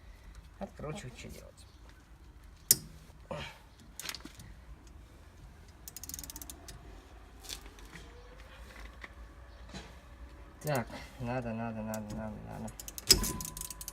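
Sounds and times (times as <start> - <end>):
ratchet wrench clicking: 5.8 - 6.7, 12.7 - 13.9.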